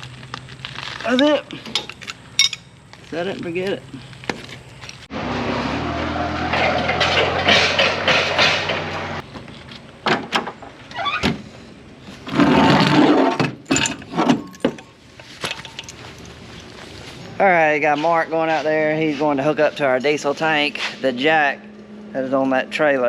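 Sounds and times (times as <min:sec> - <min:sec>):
knocks and clanks: 0:06.4 - 0:09.2, 0:12.3 - 0:16.0.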